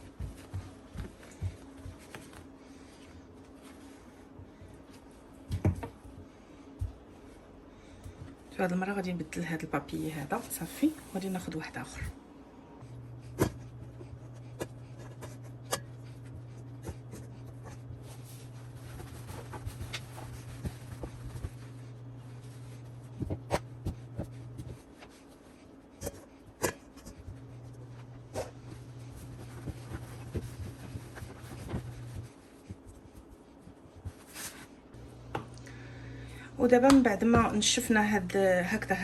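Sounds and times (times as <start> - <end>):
low steady hum: 0.0 - 39.0
paper towels crinkling: 13.8 - 26.1, 27.2 - 35.0.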